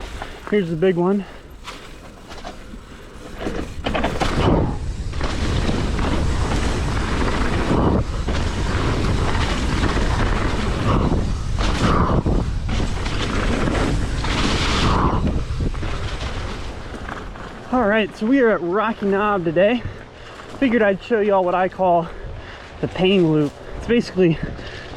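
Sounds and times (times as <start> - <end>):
tyres rumbling on dirt: 0.0 - 24.9
wind on microphone: 3.4 - 17.7.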